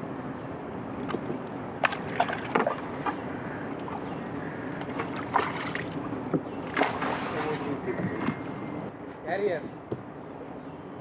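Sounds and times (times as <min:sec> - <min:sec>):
water washing: 0:01.0 - 0:03.2, 0:04.7 - 0:08.4.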